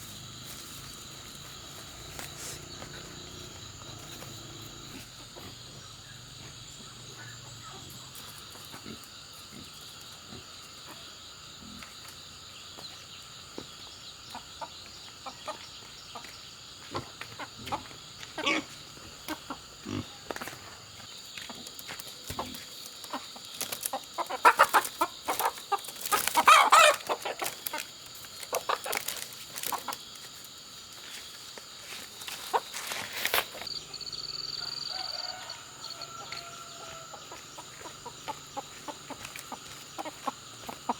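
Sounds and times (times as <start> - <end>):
chickens clucking: 13.6 - 20.6, 21.4 - 30.4, 32.0 - 40.9
rooster crowing: 33.7 - 37.8.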